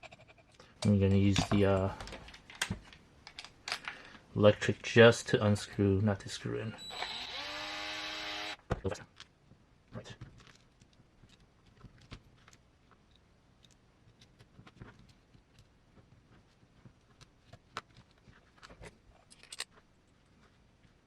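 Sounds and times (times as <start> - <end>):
small parts and tools clicking: 0.0 - 4.2, 10.2 - 15.8, 16.5 - 19.8.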